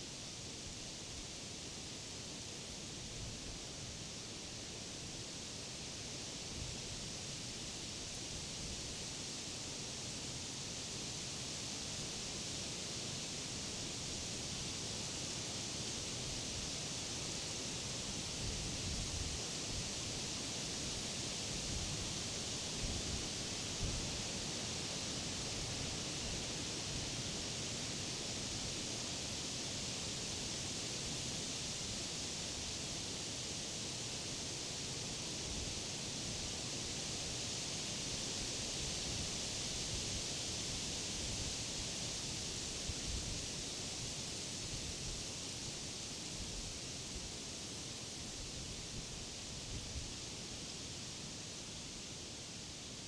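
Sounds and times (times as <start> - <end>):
wind rustling leaves and grass: 15.5 - 53.0.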